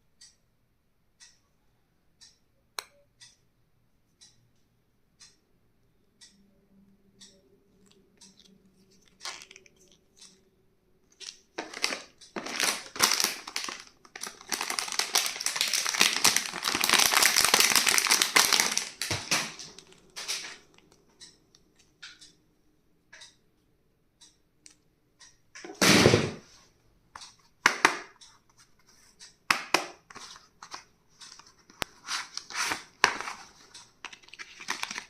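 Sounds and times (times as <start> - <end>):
packaging tearing and crinkling: 11.6 - 20.5, 34.1 - 35.0.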